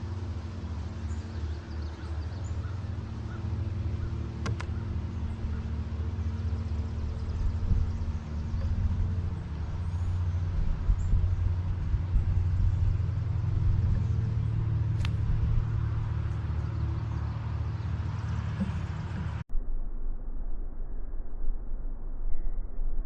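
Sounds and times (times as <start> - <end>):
low mechanical hum: 0.0 - 23.0
sharp click: 4.4 - 4.8.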